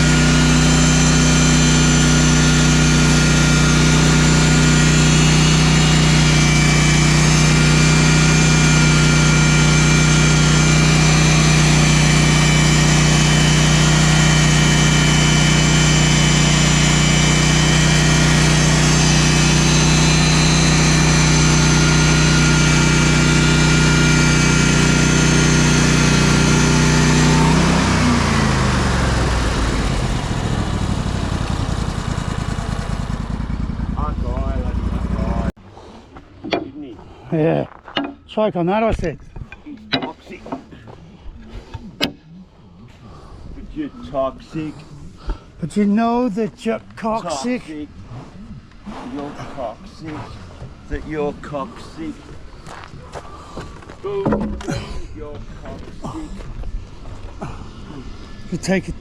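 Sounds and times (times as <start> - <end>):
engine running and spinning down: 0.0 - 35.6, 49.9 - 59.0.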